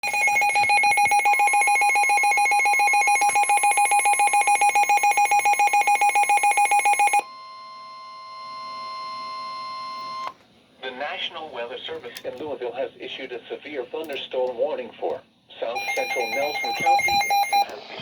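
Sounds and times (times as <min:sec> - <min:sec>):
alert radio beeping rapidly: 0:00.0 - 0:07.2, 0:15.8 - 0:17.8
steady warning alarm tone: 0:00.0 - 0:10.3, 0:15.8 - 0:17.7.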